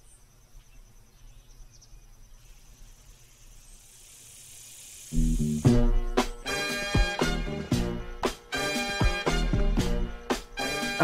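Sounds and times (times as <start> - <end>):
insect-like hiss: 0.0 - 11.0
upbeat swing music: 5.2 - 11.0.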